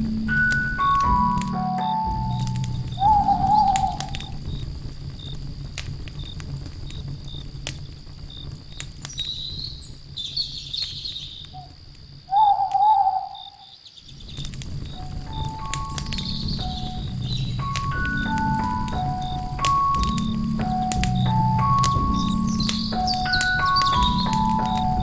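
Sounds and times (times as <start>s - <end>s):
low rumble: 0.0s - 8.7s, 14.1s - 25.0s
fire crackling and popping: 0.0s - 12.9s, 14.0s - 25.0s
insect chirping: 0.0s - 25.0s
warbling animal call: 3.0s - 4.4s, 12.3s - 13.7s.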